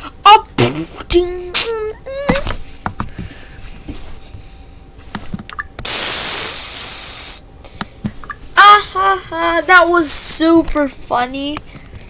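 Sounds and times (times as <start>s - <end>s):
loud hiss: 5.8s - 7.4s.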